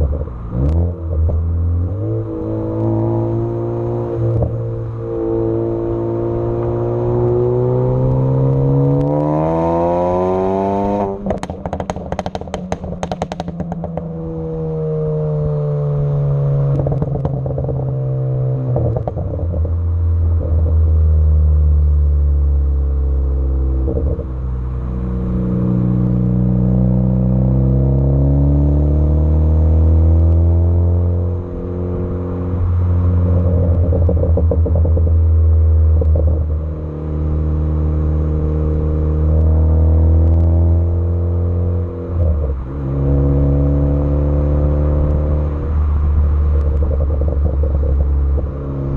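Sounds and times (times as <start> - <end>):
car engine and exhaust revving: 0.0 - 48.9
exhaust pops and crackles: 11.0 - 14.3, 16.7 - 21.2, 33.4 - 36.8, 45.0 - 48.9.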